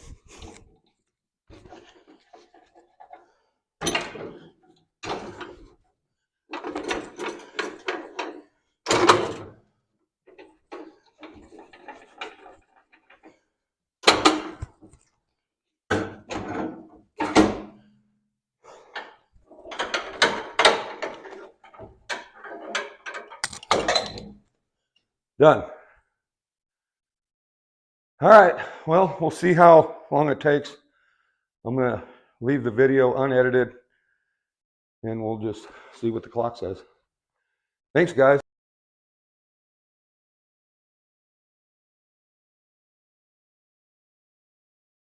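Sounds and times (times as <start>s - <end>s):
metal clunks and rattles: 1.5s - 5.8s, 6.5s - 9.6s, 10.3s - 13.4s, 14.0s - 15.0s, 15.9s - 17.9s, 18.7s - 24.4s.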